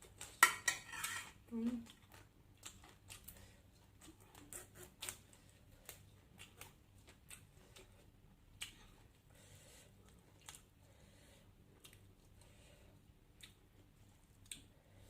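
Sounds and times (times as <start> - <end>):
soft chewing clicks and taps: 1.8 - 8.9, 13.3 - 14.7.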